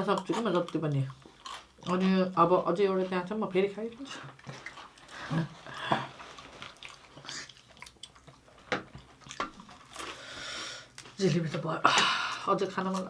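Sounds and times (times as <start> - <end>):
chewing crunchy food: 0.0 - 2.5, 4.0 - 10.3.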